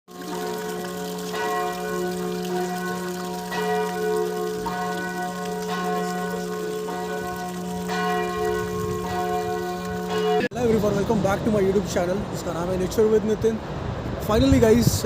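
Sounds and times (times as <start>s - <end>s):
church bell tolling: 0.1s - 11.1s.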